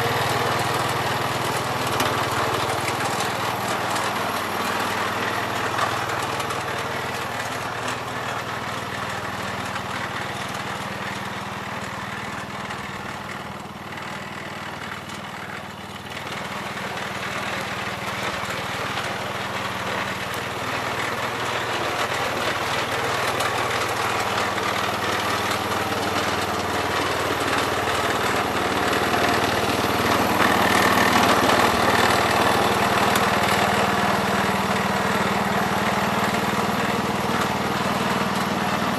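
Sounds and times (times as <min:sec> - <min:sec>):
tractor engine running: 0:00.0 - 0:38.9.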